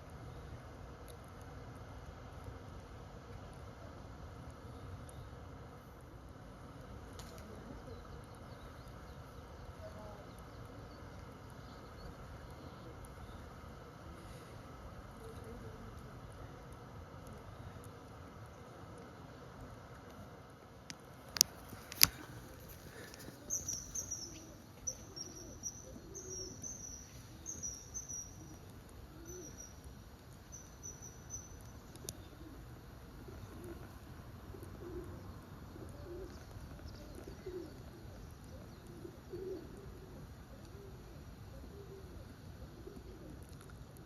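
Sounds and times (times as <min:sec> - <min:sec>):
small bird chirping: 0:21.4 - 0:32.4
pigeon cooing: 0:22.1 - 0:29.6, 0:32.0 - 0:43.8.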